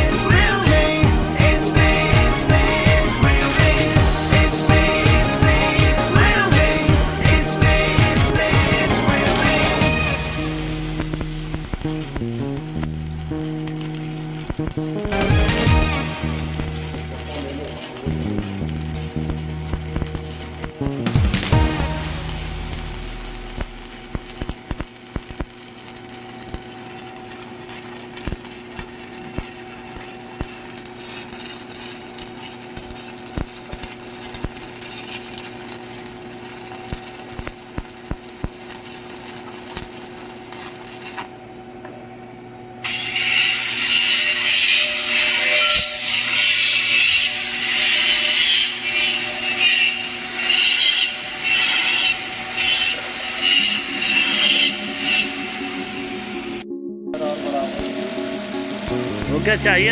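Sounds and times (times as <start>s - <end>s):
electrical hum: 0.0s - 30.7s
welding arc crackling and hissing: 0.0s - 41.3s, 42.9s - 56.6s.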